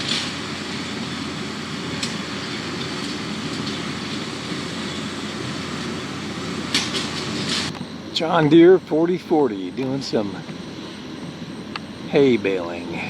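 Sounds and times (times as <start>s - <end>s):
baler mechanical clatter: 0.0s - 7.9s
diesel tractor running: 0.0s - 13.0s.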